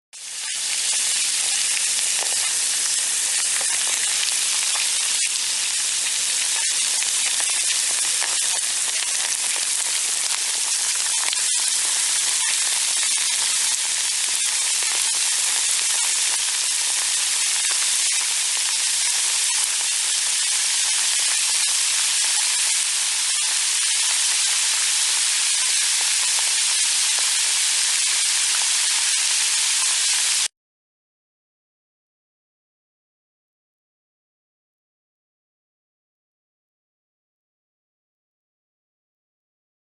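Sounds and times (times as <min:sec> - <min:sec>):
acid fizzing hiss: 0:00.2 - 0:30.5.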